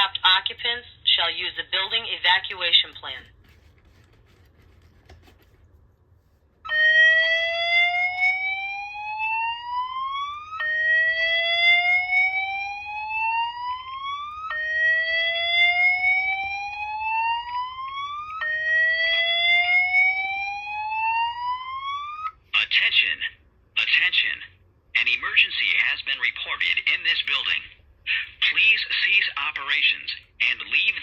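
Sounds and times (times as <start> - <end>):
fire alarm whoop tone: 6.7 - 22.4.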